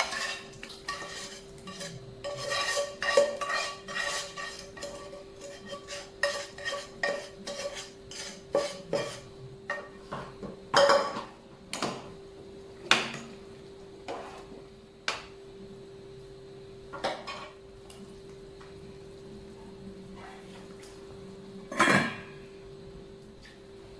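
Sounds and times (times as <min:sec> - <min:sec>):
metal utensil clinking on pot: 0:00.0 - 0:09.9.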